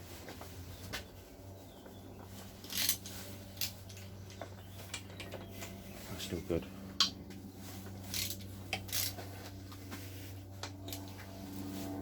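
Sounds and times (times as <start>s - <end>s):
steady low hum: 0.0s - 12.0s
faint clicks of parts: 2.2s - 5.8s
metal parts scraping: 2.6s - 4.4s, 7.9s - 9.5s.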